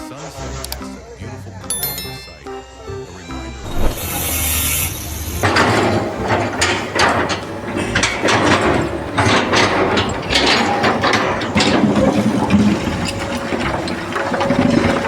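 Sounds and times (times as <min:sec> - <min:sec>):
machinery running: 0:03.5 - 0:15.0
metal clanks and knocks: 0:03.6 - 0:15.0.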